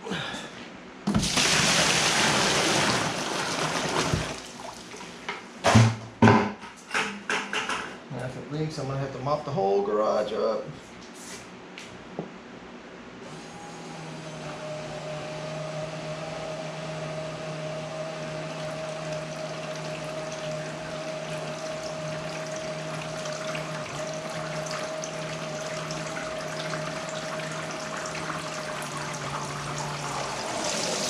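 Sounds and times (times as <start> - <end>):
electric pump motor hum: 1.0 - 5.2, 13.2 - 31.0
water splashing and bubbling: 1.1 - 5.2, 18.6 - 31.0.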